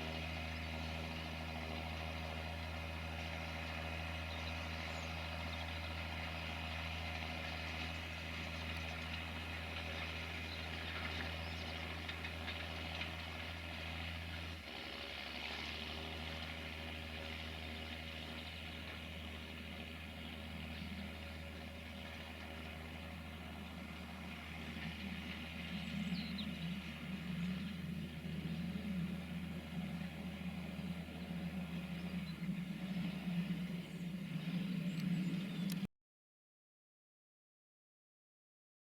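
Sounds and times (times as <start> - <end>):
tractor diesel engine running: 0.0 - 35.9.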